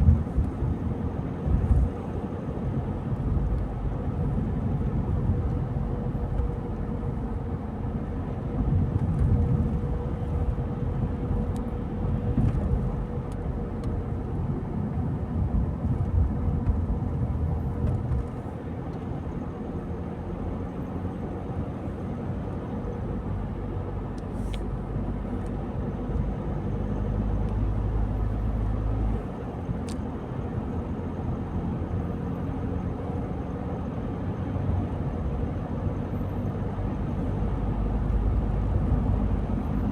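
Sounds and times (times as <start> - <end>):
car engine and tyre rumble: 0.0 - 39.9.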